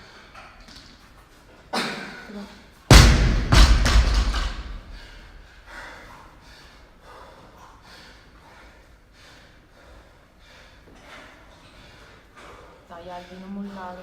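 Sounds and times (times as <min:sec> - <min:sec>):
person breathing hard: 0:04.2 - 0:14.0.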